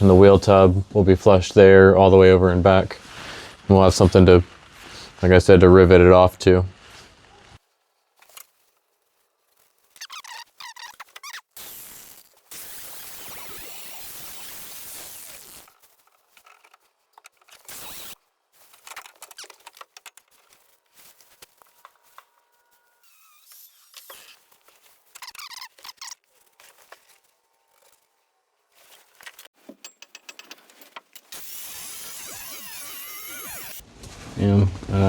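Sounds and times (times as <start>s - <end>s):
squeaks of steel tubing: 9.9s - 11.6s, 22.4s - 26.2s
clicks and knocks of steel tubing: 29.6s - 31.3s.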